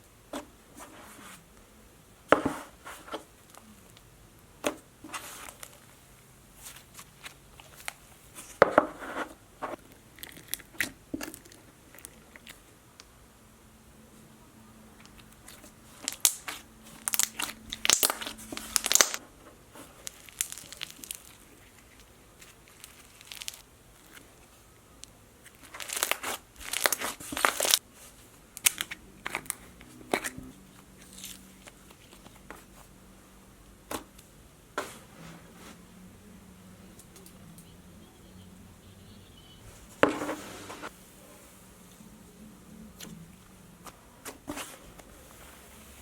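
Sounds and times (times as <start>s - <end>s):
slime squished by hand: 16.0s - 19.2s.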